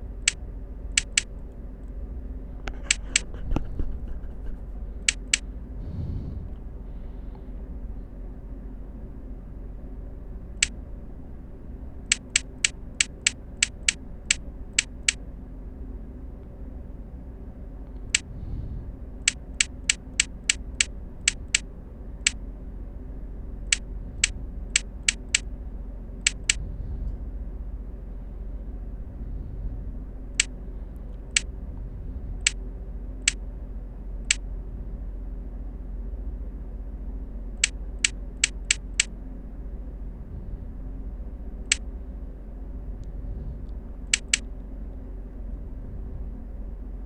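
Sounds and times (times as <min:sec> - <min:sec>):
steady low hum: 0:00.0 - 0:47.0
short sharp clicks: 0:00.2 - 0:01.3, 0:02.7 - 0:05.5, 0:12.1 - 0:15.2, 0:19.3 - 0:21.6, 0:23.7 - 0:25.5, 0:26.2 - 0:26.6, 0:37.6 - 0:39.1, 0:44.1 - 0:44.5.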